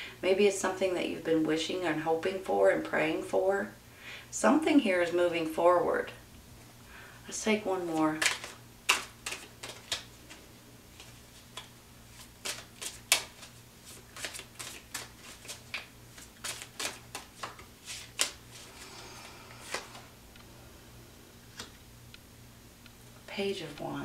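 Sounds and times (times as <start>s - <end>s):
soft rustle of cards: 7.8s - 20.6s
cards snapping and tapping: 8.2s - 10.4s, 11.0s - 18.4s.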